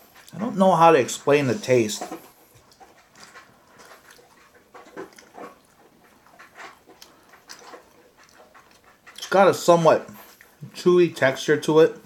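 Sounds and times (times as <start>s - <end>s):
person chewing: 0.0s - 0.5s, 1.2s - 9.4s, 10.0s - 10.8s.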